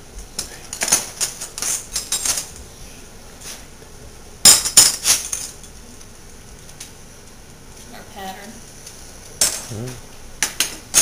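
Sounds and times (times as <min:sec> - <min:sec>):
silverware clinking: 0:04.5 - 0:05.7.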